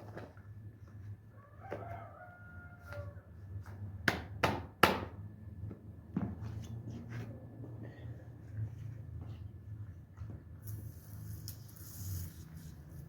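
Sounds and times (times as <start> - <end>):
rooster crowing: 1.3 - 3.3.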